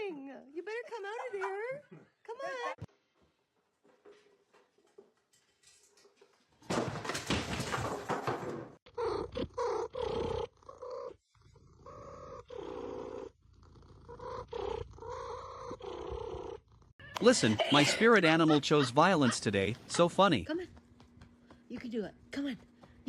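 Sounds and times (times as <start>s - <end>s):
cat purring loudly: 9.0s - 16.9s.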